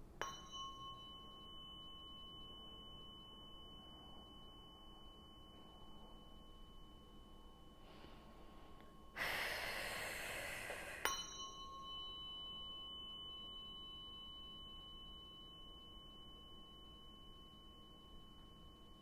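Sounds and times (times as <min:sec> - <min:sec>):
tuning fork ringing: 0:00.0 - 0:19.0
tuning fork tap: 0:00.2 - 0:03.7.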